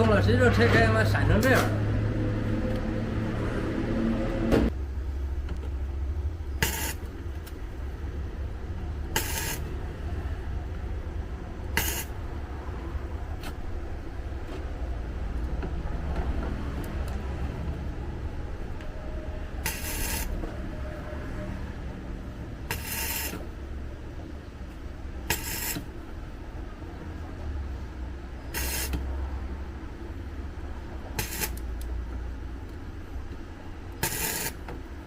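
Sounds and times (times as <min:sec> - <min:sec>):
steady low hum: 0:01.7 - 0:35.0
welding bursts: 0:06.6 - 0:07.2, 0:09.0 - 0:10.2, 0:11.6 - 0:12.3, 0:19.6 - 0:20.4, 0:22.6 - 0:23.6, 0:25.2 - 0:26.0, 0:28.5 - 0:29.1, 0:31.1 - 0:31.8, 0:34.0 - 0:34.7.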